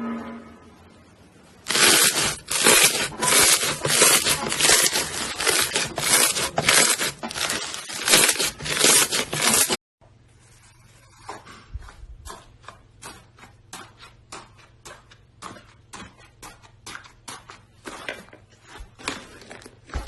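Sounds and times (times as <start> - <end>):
slime crackling squishes: 1.7 - 9.8.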